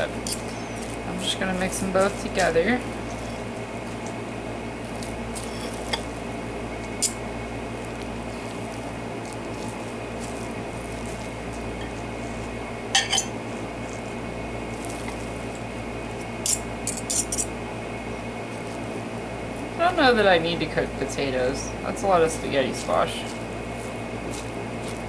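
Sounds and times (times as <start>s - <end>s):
kitchen appliance hum: 0.0s - 25.0s
utensil clinking and scraping a dish: 5.0s - 6.2s, 7.9s - 12.1s, 12.9s - 13.4s, 16.4s - 17.5s.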